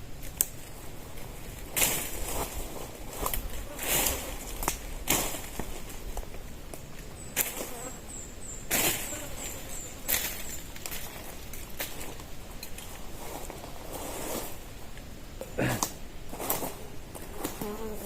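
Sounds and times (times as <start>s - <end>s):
high insect chirping: 6.9s - 11.4s.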